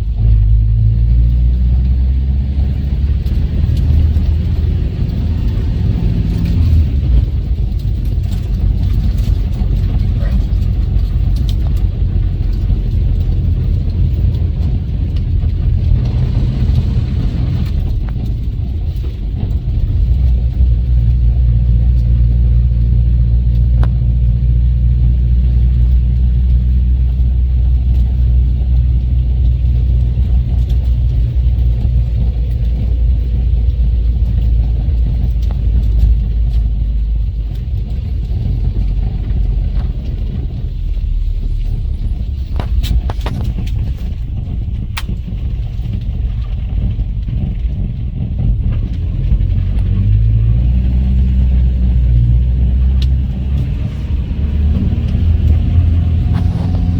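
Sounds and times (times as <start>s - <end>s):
car engine running: 0.0s - 56.9s.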